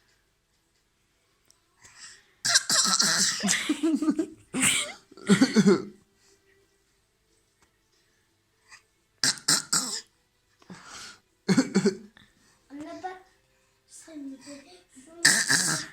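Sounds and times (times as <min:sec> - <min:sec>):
child fake coughing: 0:02.5 - 0:03.7, 0:04.6 - 0:05.9, 0:09.2 - 0:10.1, 0:15.2 - 0:15.9.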